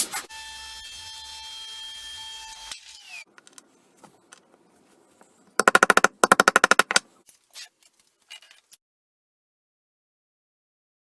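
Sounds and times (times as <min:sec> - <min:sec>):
rapid rattling hammering: 0:05.6 - 0:07.1.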